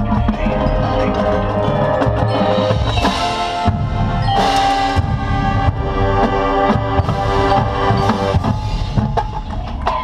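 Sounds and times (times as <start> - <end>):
brass chords: 0.0 - 9.0
drum hits: 1.9 - 9.9.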